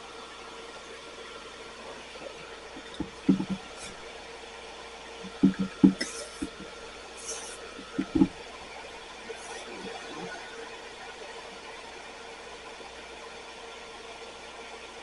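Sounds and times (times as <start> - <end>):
extractor fan humming: 0.0 - 15.0
soldering iron sizzling: 2.1 - 4.5, 5.2 - 10.4
tools and glass knocking: 5.3 - 6.6.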